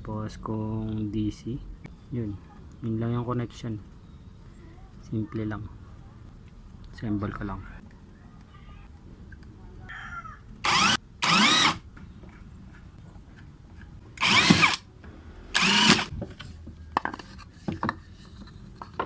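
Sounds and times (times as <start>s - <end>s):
power drill driving screws: 10.6s - 11.8s, 14.2s - 14.9s, 15.5s - 16.1s.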